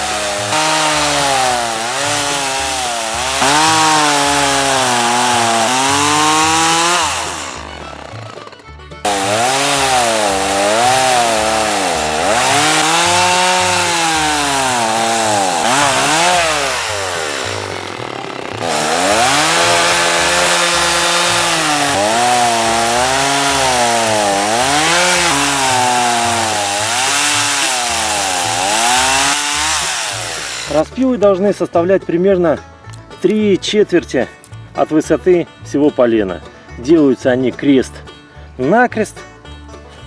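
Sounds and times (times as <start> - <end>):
chainsaw cutting into log: 0.0 - 30.9.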